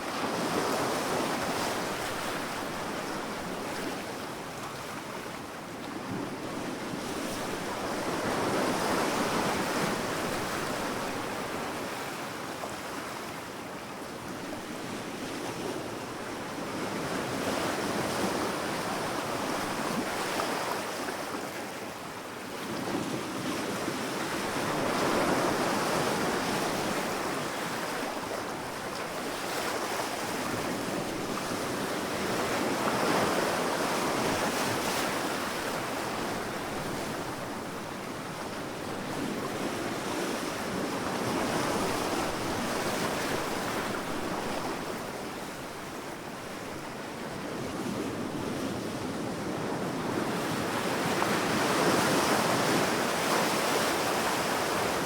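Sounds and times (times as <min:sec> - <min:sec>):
sea waves breaking on beach: 0:14.4 - 0:55.0.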